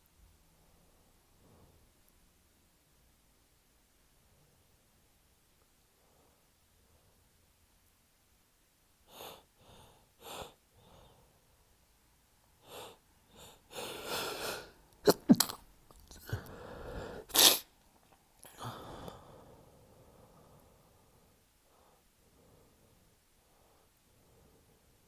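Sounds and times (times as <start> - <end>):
man stifled sneezing: 13.8 - 15.6, 17.2 - 17.7.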